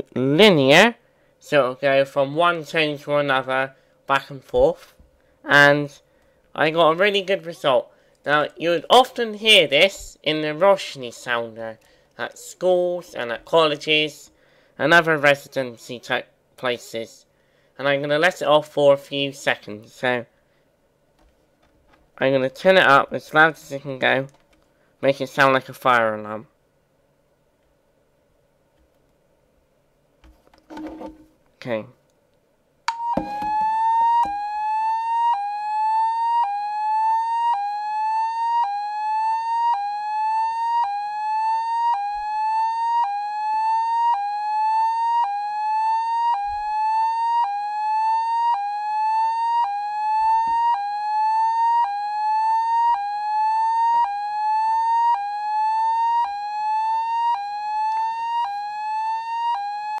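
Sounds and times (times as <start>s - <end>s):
sweeping fire alarm tone: 32.9s - 60.0s.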